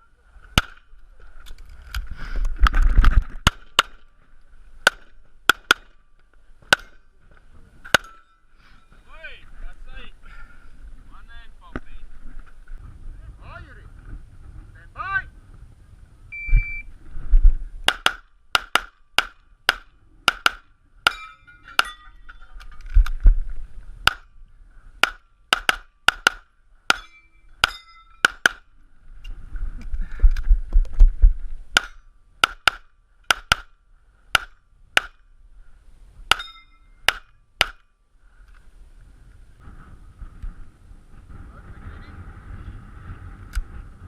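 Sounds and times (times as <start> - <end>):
metallic ring of steel targets: 7.9 - 9.0, 21.0 - 22.8, 26.9 - 28.5, 31.8 - 32.1, 36.3 - 37.4.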